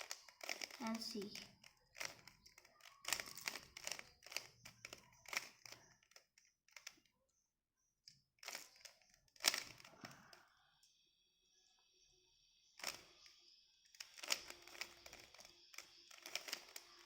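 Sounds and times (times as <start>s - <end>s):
rubik's cube clicking: 0.0s - 7.0s, 8.4s - 10.2s, 12.8s - 13.3s, 14.0s - 17.0s.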